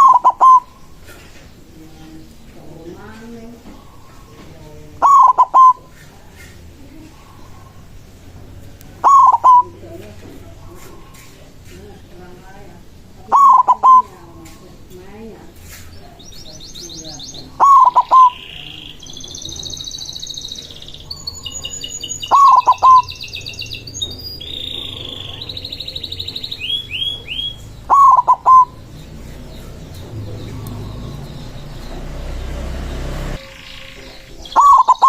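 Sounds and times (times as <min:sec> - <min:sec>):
dove cooing: 0:00.0 - 0:02.2, 0:02.8 - 0:08.0, 0:08.9 - 0:11.5, 0:13.2 - 0:14.6, 0:16.9 - 0:18.8, 0:21.1 - 0:23.1, 0:24.5 - 0:35.0
small songbirds chirping: 0:00.0 - 0:35.0.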